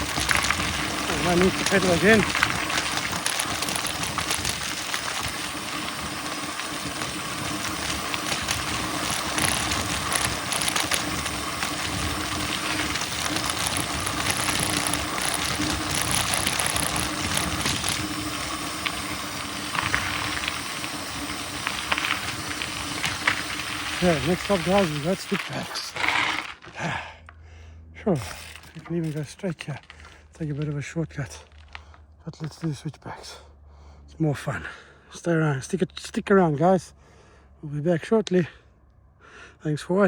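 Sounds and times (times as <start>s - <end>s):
bike drivetrain rattling: 0.0s - 27.2s, 28.1s - 32.6s
bike tyres on dirt: 0.0s - 27.4s, 28.0s - 32.8s.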